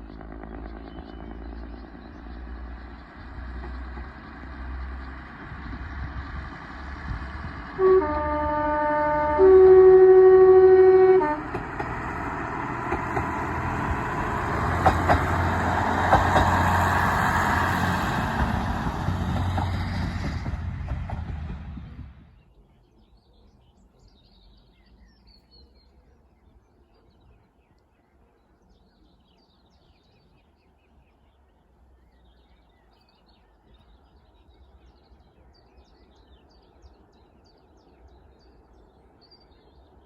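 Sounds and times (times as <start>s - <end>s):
train passing: 0.0s - 22.4s
low engine rumble: 0.0s - 22.7s
locomotive two-tone horn: 7.7s - 12.0s.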